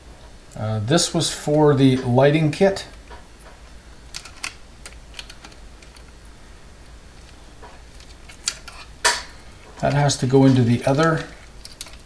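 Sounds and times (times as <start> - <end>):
plastic connectors clicking: 4.1 - 6.1, 10.9 - 12.0.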